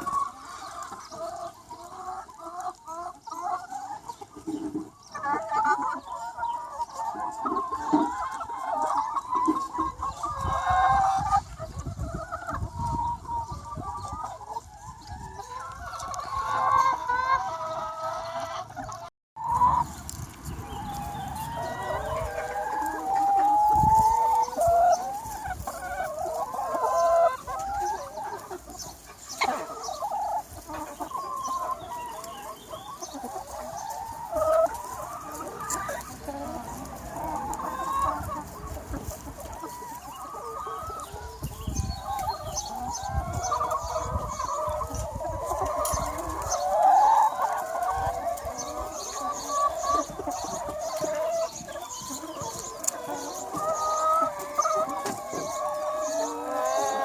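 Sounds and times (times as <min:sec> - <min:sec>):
chickens clucking: 0:00.0 - 0:57.0.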